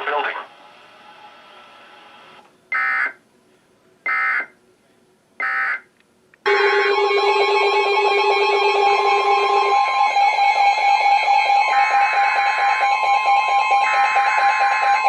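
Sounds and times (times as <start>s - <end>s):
steady held electronic tones: 6.5s - 15.0s.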